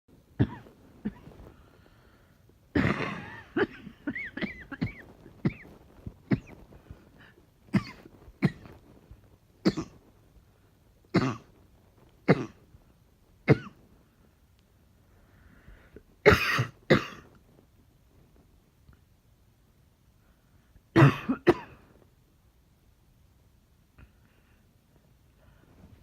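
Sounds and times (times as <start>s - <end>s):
woman coughing: 2.8s - 5.7s, 16.3s - 17.3s, 21.0s - 21.8s.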